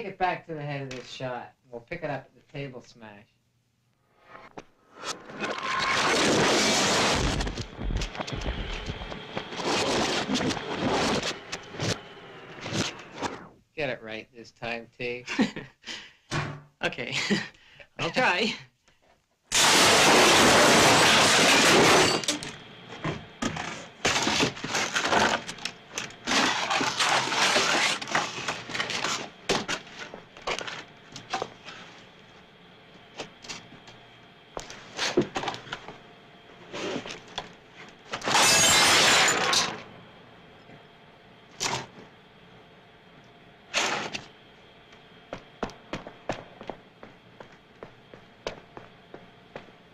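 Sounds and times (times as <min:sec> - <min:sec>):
loud breaking crash: 0:05.4 - 0:07.5, 0:19.5 - 0:22.4, 0:38.2 - 0:39.8.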